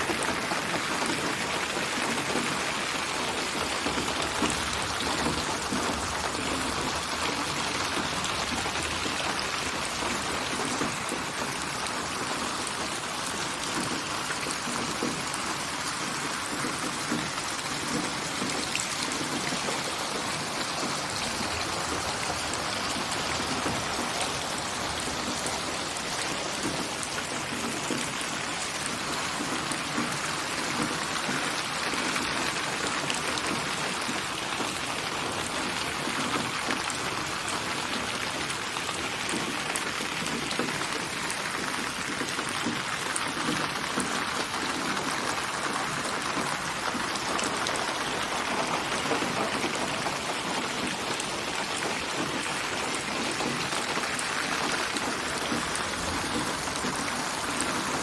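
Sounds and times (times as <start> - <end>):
steady rain patter: 0.0 - 58.0.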